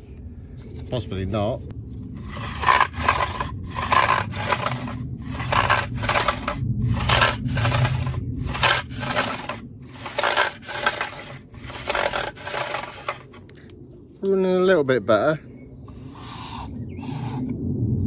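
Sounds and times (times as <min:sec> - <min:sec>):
mower pull-start rope rasping: 0:02.2 - 0:13.4, 0:15.9 - 0:17.5.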